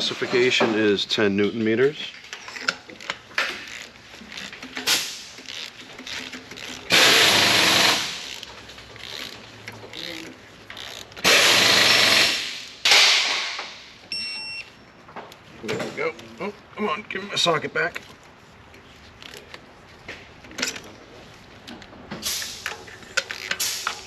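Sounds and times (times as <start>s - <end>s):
short beep: 14.1s - 14.8s.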